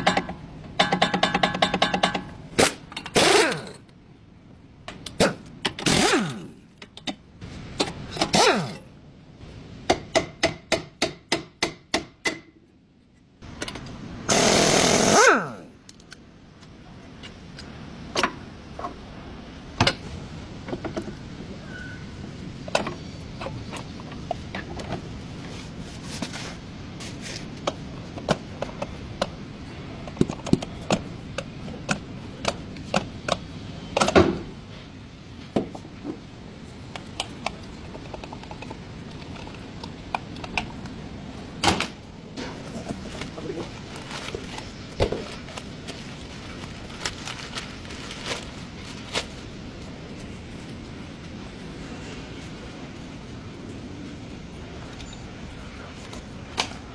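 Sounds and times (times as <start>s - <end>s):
hand tools knocking on metal: 0.0s - 2.3s
steady background noise: 0.0s - 56.9s.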